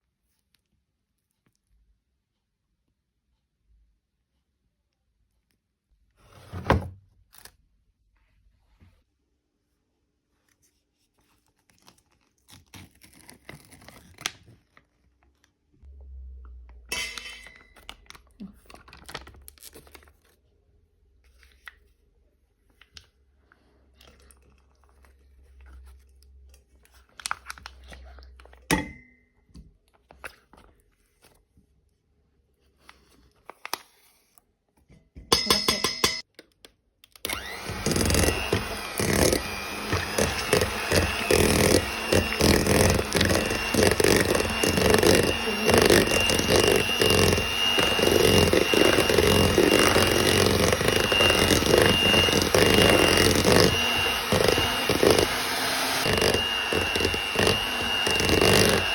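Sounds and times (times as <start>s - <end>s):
electric mixer whining: 37.3s - 58.9s.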